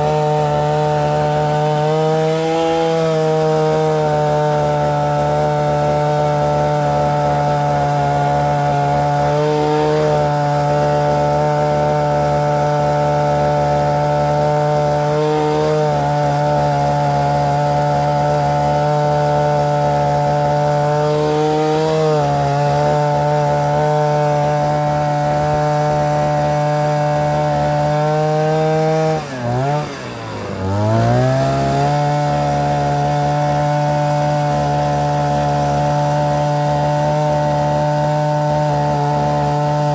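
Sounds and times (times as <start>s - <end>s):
post-hole auger engine running: 0.0s - 39.9s.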